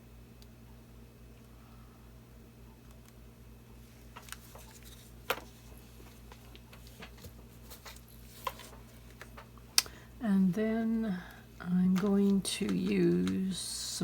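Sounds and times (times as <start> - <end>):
low room hum: 0.0 - 14.0
clicks and taps of paint supplies: 11.9 - 13.4.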